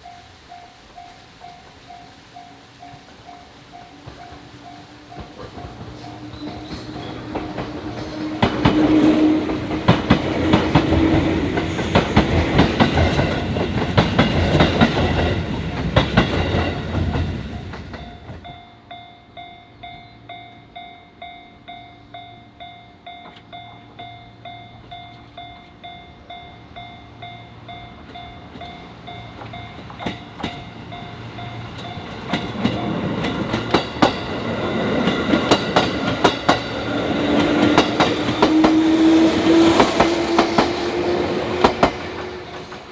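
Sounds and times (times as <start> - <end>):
level-crossing warning bell dinging: 0.0 - 42.9
train wheels clacking on rail joints: 0.9 - 18.7, 27.7 - 42.9.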